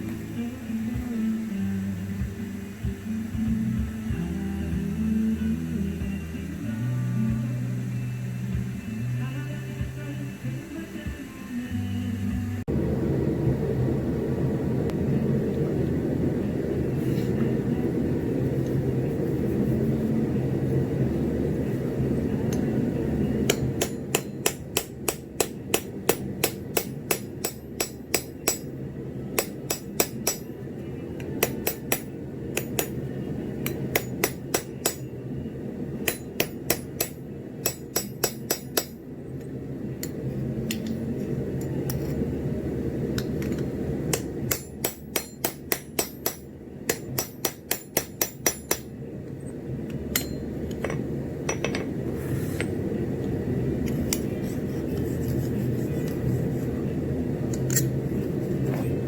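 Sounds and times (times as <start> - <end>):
steady low rumble: 0.0 - 59.0
hammer ringing on anvil: 23.4 - 28.8, 29.4 - 30.6, 31.4 - 33.0, 33.6 - 35.2, 36.0 - 39.0, 44.1 - 48.9, 50.1 - 51.9.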